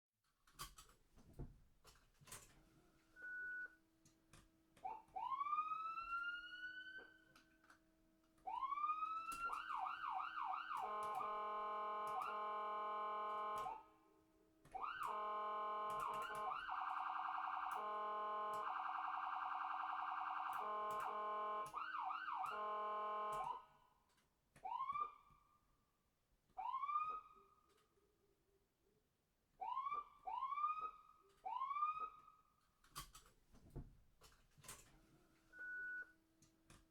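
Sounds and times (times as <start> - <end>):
cartoon ambulance siren: 4.8 - 7.4, 8.4 - 14.0, 14.7 - 23.8, 24.6 - 25.5, 26.6 - 27.6, 29.6 - 32.4
scattered clicks: 10.7 - 11.3, 15.9 - 17.0.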